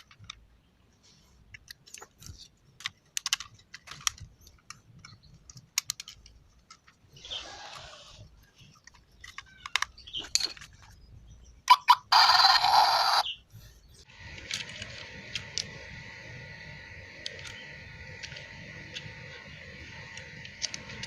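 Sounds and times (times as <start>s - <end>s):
simulated engine hum with whine: 14.1s - 21.0s.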